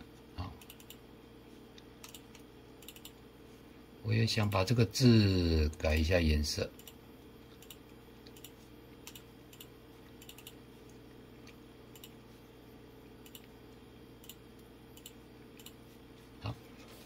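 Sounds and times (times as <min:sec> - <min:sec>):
low electrical hum: 0:00.0 - 0:17.0
computer mouse clicks: 0:00.6 - 0:01.0, 0:01.8 - 0:03.2, 0:06.8 - 0:10.6, 0:11.4 - 0:12.2, 0:13.2 - 0:13.5, 0:14.2 - 0:15.8.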